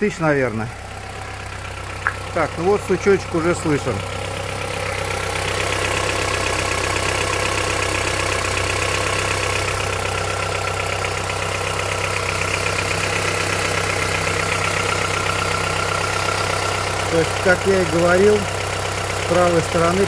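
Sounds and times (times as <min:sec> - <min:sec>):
car engine idling: 0:00.0 - 0:20.0
fast light engine knock: 0:01.3 - 0:02.6.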